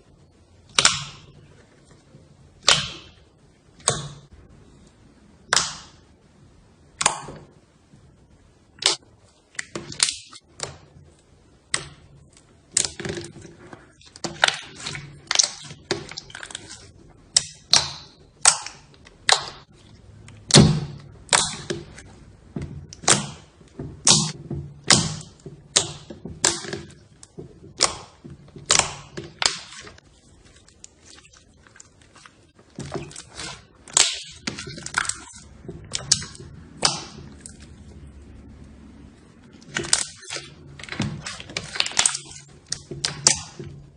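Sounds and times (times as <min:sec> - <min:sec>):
slime popping and clicking: 0:21.3 - 0:21.8.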